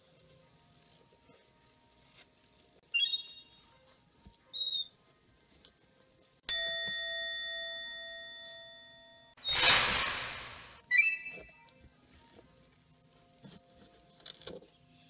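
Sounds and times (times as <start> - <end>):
small bell ringing: 6.5 - 9.3.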